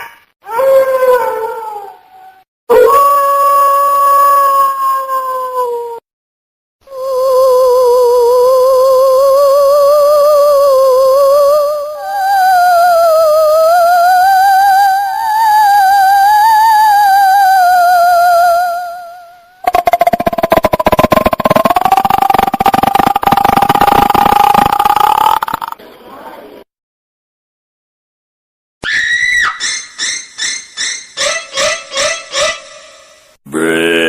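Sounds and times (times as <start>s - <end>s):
wailing ghost tone with vibrato: 19.7s - 25.6s
buzzy pulsing tone: 19.7s - 25.8s.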